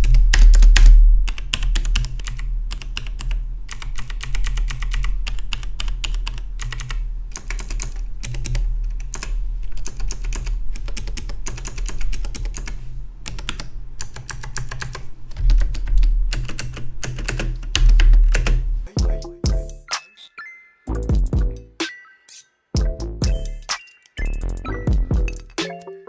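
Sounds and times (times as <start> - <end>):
mechanical keyboard typing: 0.0 - 18.7.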